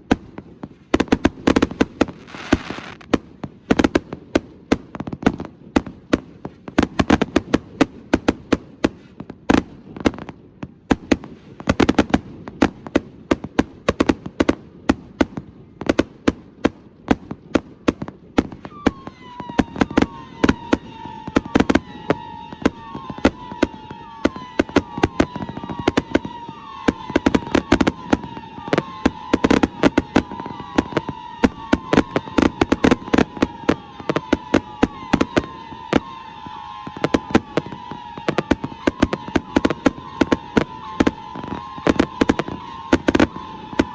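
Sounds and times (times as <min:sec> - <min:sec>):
firework bangs: 0:00.0 - 0:43.9
high firework whistle: 0:01.5 - 0:03.1, 0:18.5 - 0:43.9.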